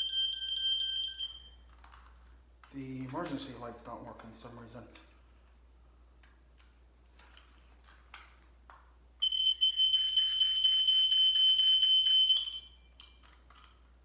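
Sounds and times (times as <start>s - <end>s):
smoke alarm beep: 0.0s - 1.7s, 9.2s - 13.4s.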